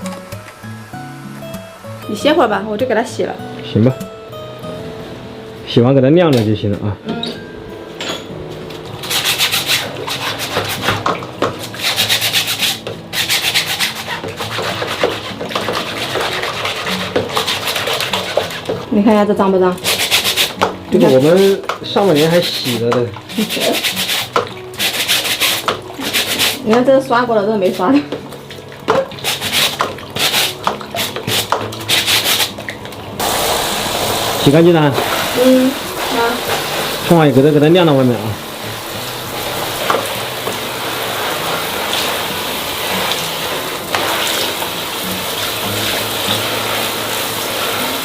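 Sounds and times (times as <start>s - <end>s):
running water: 0.0s - 7.0s, 8.0s - 48.0s
brush scrubbing a filter: 9.0s - 11.0s, 11.6s - 18.9s, 19.8s - 26.7s, 29.0s - 32.6s, 33.2s - 48.0s.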